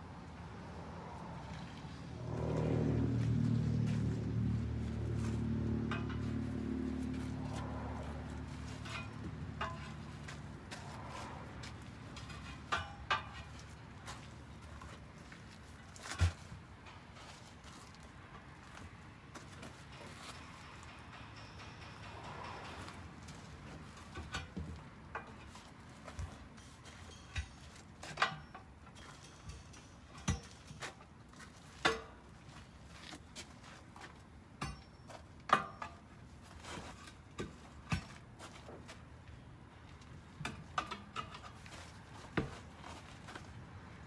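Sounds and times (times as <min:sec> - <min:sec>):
metal tools knocking and clinking: 0:12.2 - 0:13.6, 0:19.7 - 0:25.5, 0:26.2 - 0:31.1.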